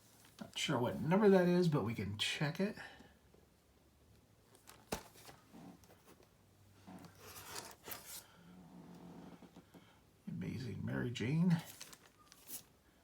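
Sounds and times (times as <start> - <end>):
rustling of plastic bags: 11.5 - 12.8.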